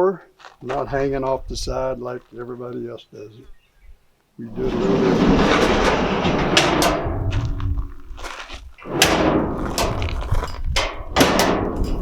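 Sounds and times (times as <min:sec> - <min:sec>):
drawer rolling on slides: 0:04.5 - 0:08.2, 0:08.8 - 0:10.5
metal drawers slamming shut: 0:04.5 - 0:08.2, 0:08.8 - 0:12.0.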